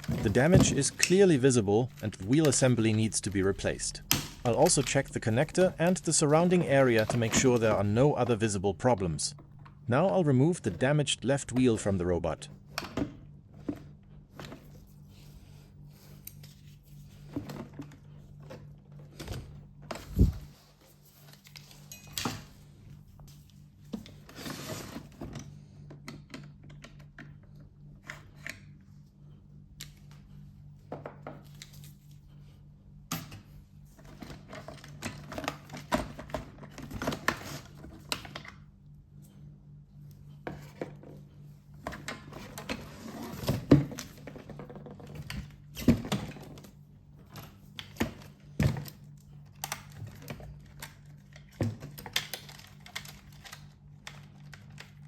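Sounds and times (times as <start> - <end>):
steady low hum: 0.0 - 24.3.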